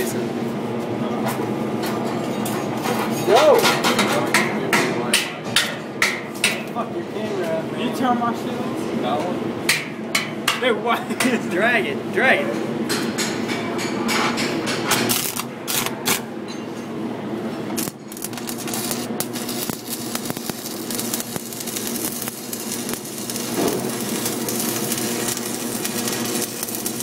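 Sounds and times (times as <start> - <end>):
electric arc welding crackle: 15.0 - 16.2, 17.7 - 27.0.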